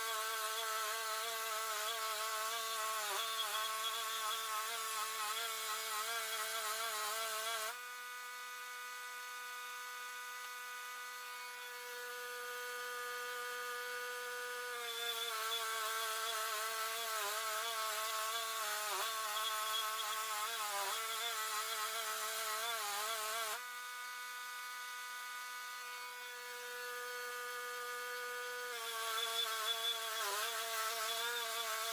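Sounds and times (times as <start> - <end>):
bandsaw mill motor hum: 0.0 - 31.9.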